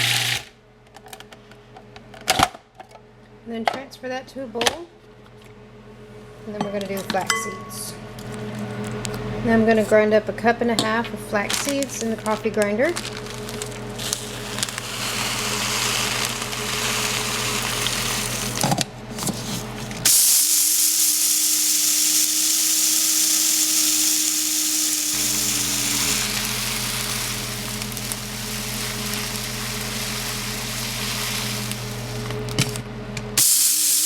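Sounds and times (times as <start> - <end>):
electric coffee grinder whirring: 0.0 - 0.5, 13.0 - 34.0.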